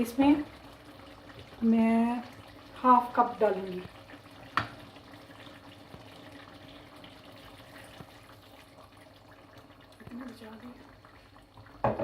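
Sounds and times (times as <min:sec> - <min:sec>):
faint running water: 0:00.0 - 0:12.0.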